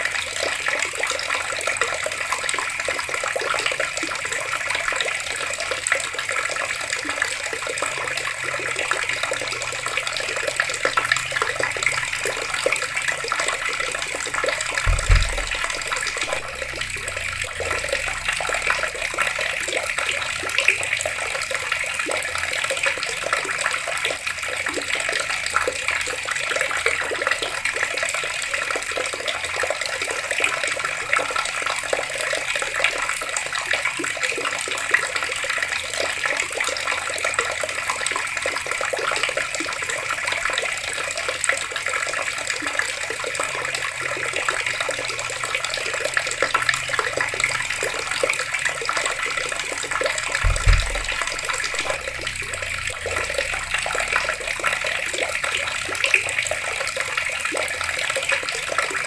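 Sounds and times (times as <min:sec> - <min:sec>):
water running from taps: 0:00.0 - 0:59.0
low thump: 0:14.8 - 0:18.2, 0:50.4 - 0:53.6.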